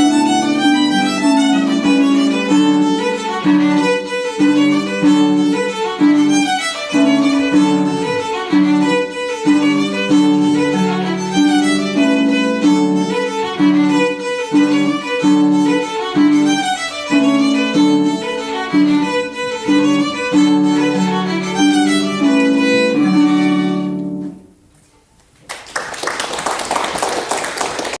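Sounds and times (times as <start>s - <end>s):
violin playing a fast reel: 0.0s - 24.2s
audience applause: 25.4s - 28.0s.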